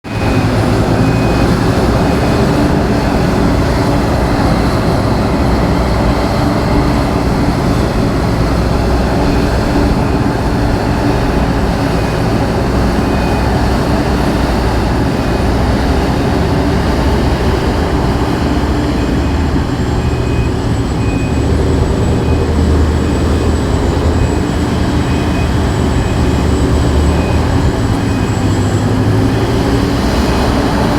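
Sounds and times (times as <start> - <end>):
heavy machinery rumbling: 0.0 - 30.9
faint high beeps: 9.1 - 30.8.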